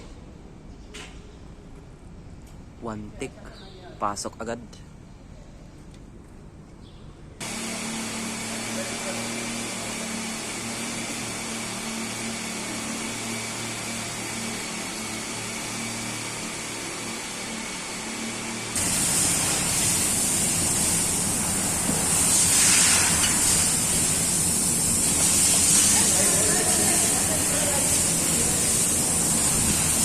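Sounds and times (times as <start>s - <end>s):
machinery hum: 7.3s - 30.0s
machinery running with high hiss: 7.4s - 30.0s.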